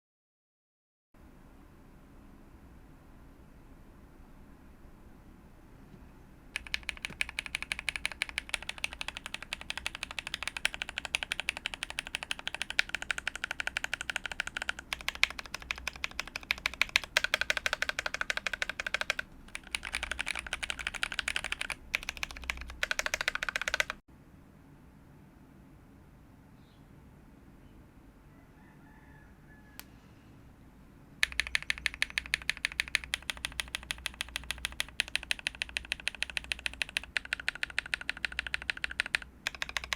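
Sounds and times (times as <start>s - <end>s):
mechanical keyboard typing: 6.6s - 24.0s, 31.2s - 39.9s.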